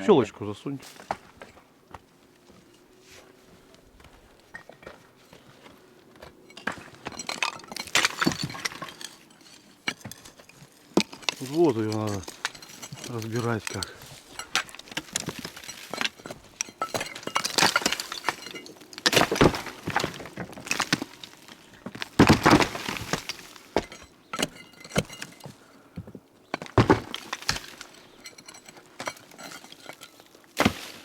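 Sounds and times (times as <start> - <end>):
scraping: 4.4 - 25.8, 26.5 - 31.0
bricks crashing and clattering: 6.5 - 31.0.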